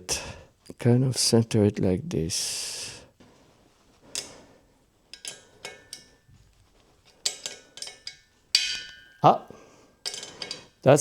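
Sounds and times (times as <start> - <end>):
metal clicks and clinks: 5.1 - 6.3, 7.1 - 9.3, 10.0 - 10.8.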